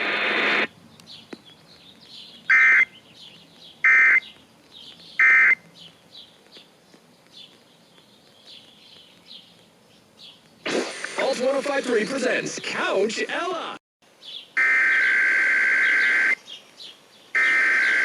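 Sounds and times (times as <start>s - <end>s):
noise burst: 0.0s - 0.7s, 10.6s - 12.9s.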